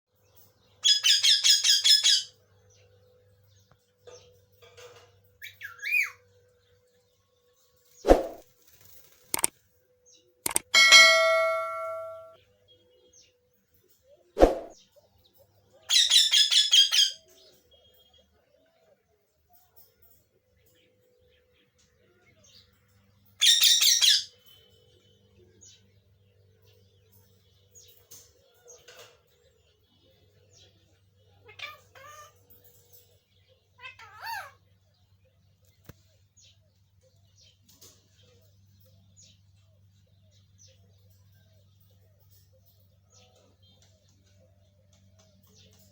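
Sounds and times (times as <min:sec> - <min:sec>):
sharp thud: 0:08.1 - 0:08.4, 0:14.4 - 0:14.8.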